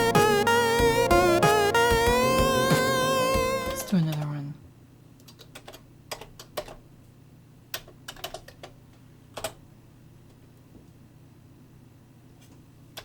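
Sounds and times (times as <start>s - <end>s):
computer keyboard key clicks: 5.2s - 6.8s, 7.7s - 8.8s.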